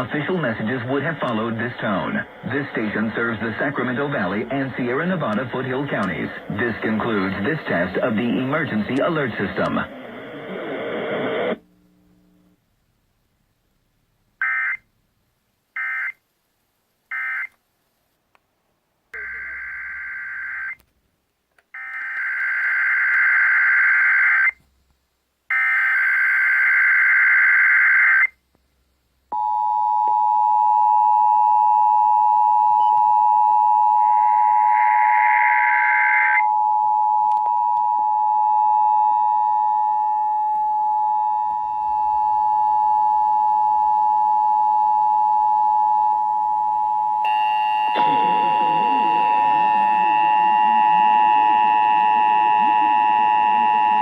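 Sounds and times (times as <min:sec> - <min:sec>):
two-tone attention signal: 0:47.2 - 0:54.0
digital data tone bursts: 0:47.3 - 0:54.0.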